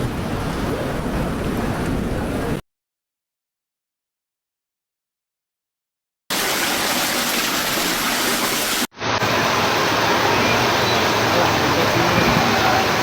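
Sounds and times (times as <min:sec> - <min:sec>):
fast-flowing floodwater rushing: 0:06.3 - 0:13.0.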